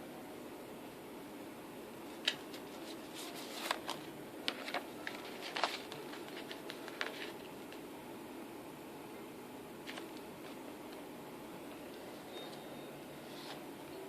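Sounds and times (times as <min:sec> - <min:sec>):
packaging clicks and rustles: 0:02.2 - 0:07.5.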